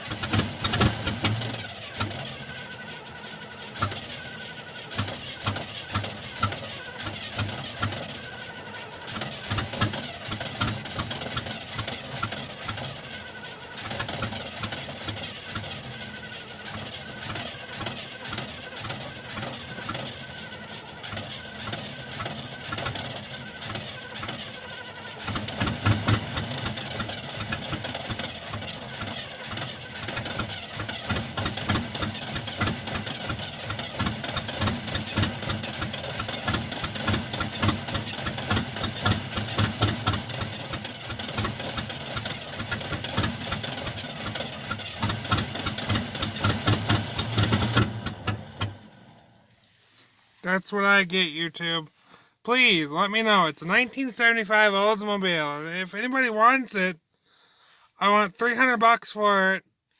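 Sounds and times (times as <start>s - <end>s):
car engine cranking: 0.0s - 59.5s.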